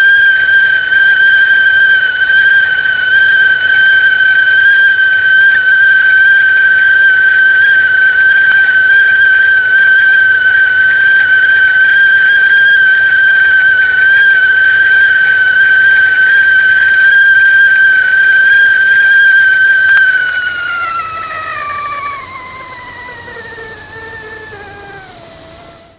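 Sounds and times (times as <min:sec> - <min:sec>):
tea kettle whistling: 0:00.0 - 0:25.9.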